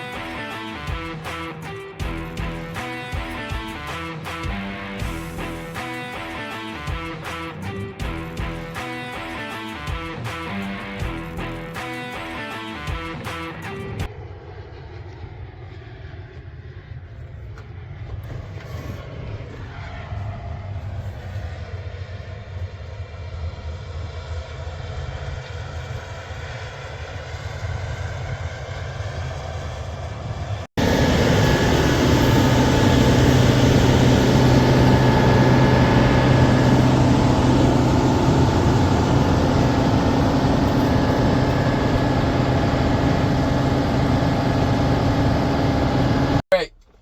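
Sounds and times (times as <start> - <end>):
close engine drone: 2.0 - 9.8, 13.8 - 46.4
heavy engine running: 4.9 - 6.2, 28.6 - 46.4.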